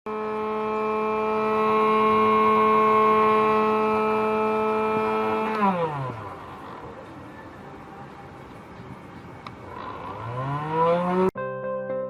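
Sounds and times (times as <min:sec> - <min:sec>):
table saw motor whining: 0:00.1 - 0:07.6, 0:09.6 - 0:11.3.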